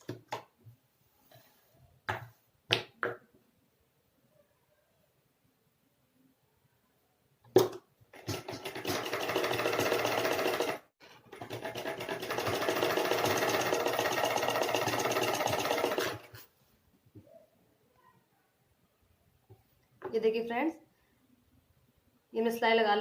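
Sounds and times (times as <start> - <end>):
sewing machine stitching: 8.1 - 16.4.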